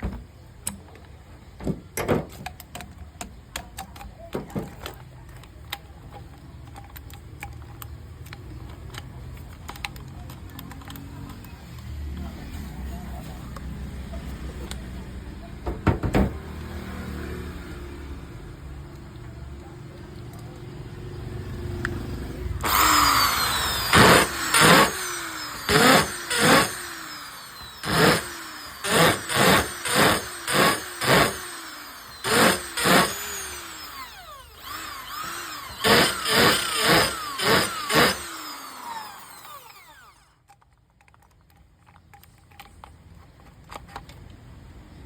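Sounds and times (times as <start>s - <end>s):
electric drill motor whining: 22.6s - 40.4s.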